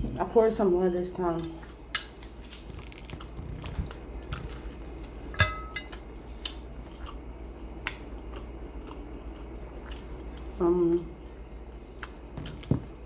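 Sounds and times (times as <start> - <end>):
tableware clinking: 5.3 - 6.0.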